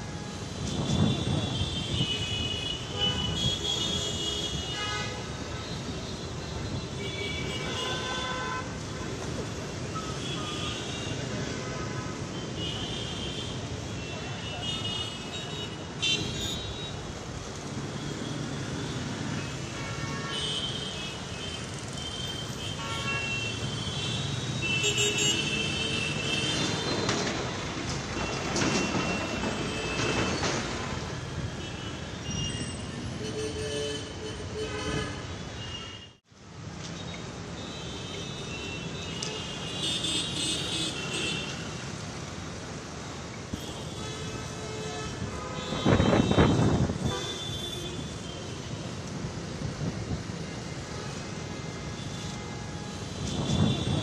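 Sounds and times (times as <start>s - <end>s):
street traffic: 0.0s - 54.0s
vehicle horns honking: 43.6s - 48.8s, 51.9s - 54.0s.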